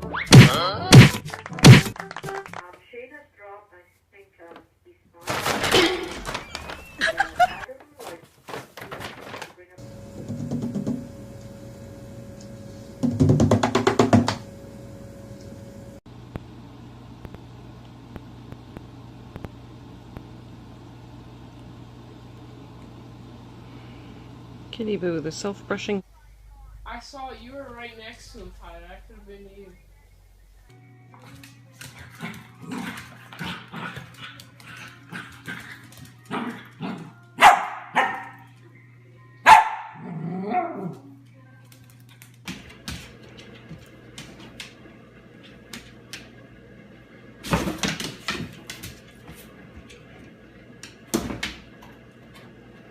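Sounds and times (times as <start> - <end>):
steady low hum: 9.8 - 34.0
fast run of loud knocks: 13.0 - 14.4
dog barking: 37.4 - 38.5, 39.4 - 40.9.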